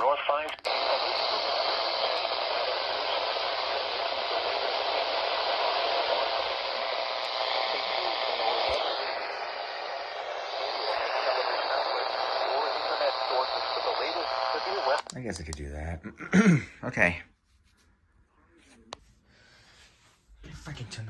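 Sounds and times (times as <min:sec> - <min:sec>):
radio static hiss: 0:00.0 - 0:15.1
faint voice: 0:07.2 - 0:15.0.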